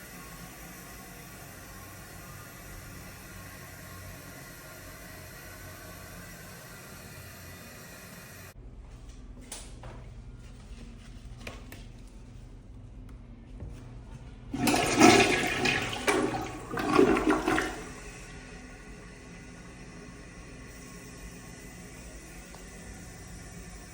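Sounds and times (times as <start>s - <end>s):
toilet flushing: 14.5s - 23.9s.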